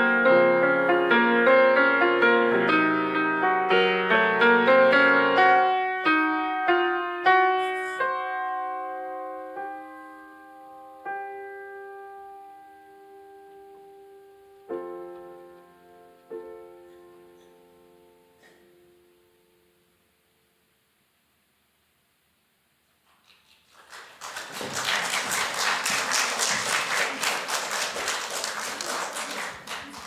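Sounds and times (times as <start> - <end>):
solo piano notes and chords: 0.0 - 19.8.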